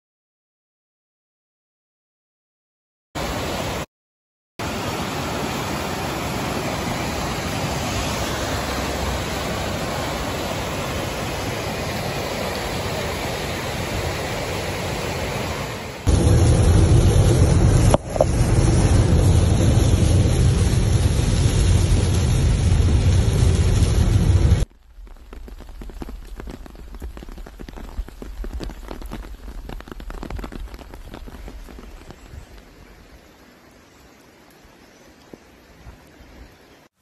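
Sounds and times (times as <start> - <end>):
heavy rain falling: 4.6 - 33.6
low rumble: 16.0 - 24.7.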